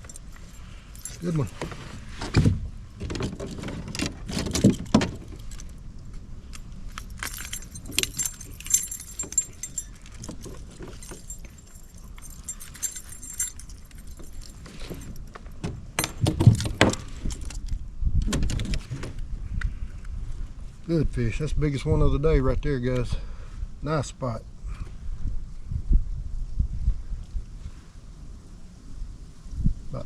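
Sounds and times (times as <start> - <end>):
metallic jingling and rattling: 0.0 - 17.8.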